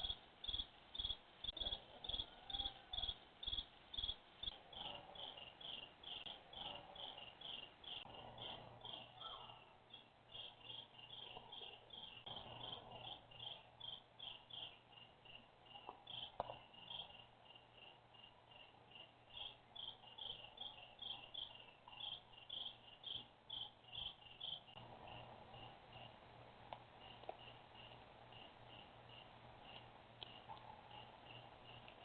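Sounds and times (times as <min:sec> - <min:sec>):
crickets chirping: 0:00.0 - 0:32.0
faint low hum: 0:00.0 - 0:32.0.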